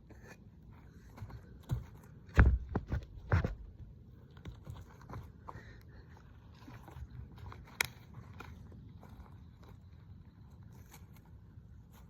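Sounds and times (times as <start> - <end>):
dull thumps and knocks: 1.2 - 3.8.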